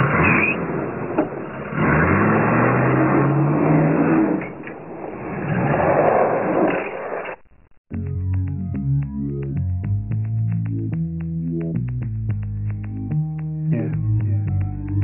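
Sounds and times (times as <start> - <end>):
car engine revving: 0.0 - 5.6.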